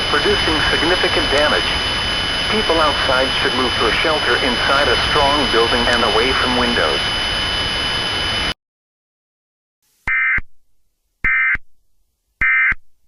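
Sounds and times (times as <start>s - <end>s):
steady hiss with faint tones: 0.0s - 7.9s
buzzy digital chirps: 0.0s - 8.5s.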